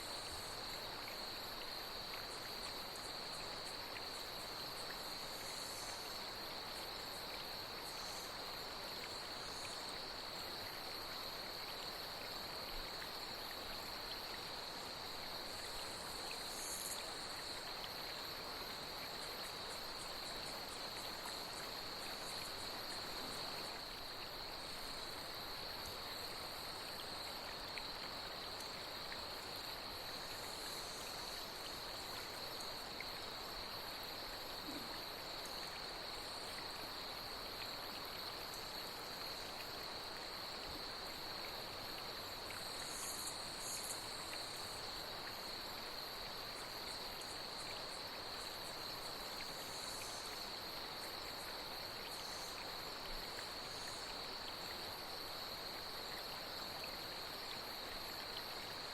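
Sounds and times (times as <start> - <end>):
high-pitched insect trill: 0.0 - 58.9
short high insect calls: 13.9 - 56.2.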